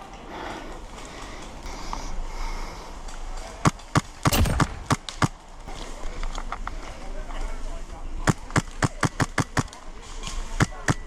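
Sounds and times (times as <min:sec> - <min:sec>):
airsoft gun shots: 0:04.2 - 0:05.4.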